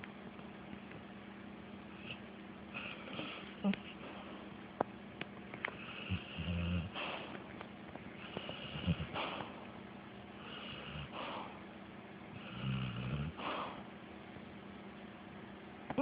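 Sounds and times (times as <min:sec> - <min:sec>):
dog snoring: 0:01.9 - 0:03.6, 0:05.7 - 0:07.4, 0:08.2 - 0:09.6, 0:10.3 - 0:11.6, 0:12.3 - 0:13.9.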